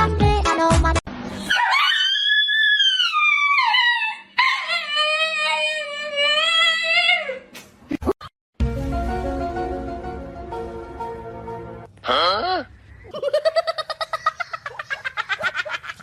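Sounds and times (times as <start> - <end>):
dog howling: 1.5 - 7.4.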